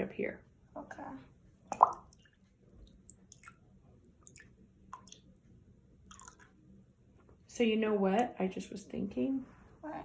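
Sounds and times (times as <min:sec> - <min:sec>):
soft wet squishes: 0:01.0 - 0:07.4.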